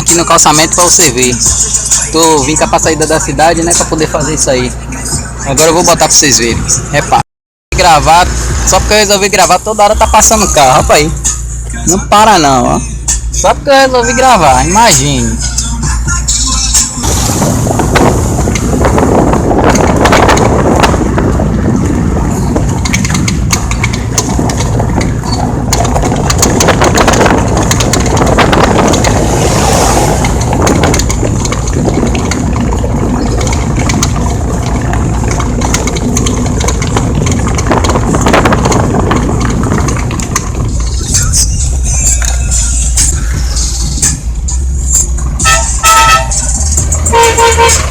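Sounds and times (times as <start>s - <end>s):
car tyre and engine rumble: 0.0s - 47.9s
car knocks and rattles: 17.0s - 43.1s.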